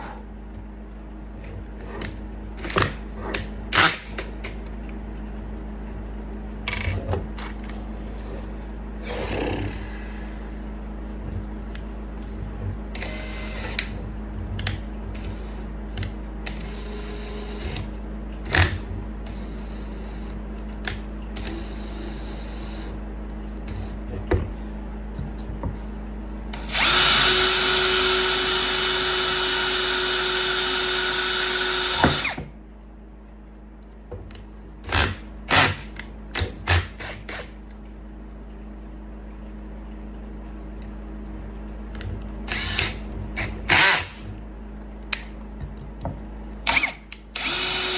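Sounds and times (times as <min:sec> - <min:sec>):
electric drill running: 0:12.9 - 0:14.0, 0:26.6 - 0:32.4, 0:42.5 - 0:44.3, 0:46.6 - 0:47.9.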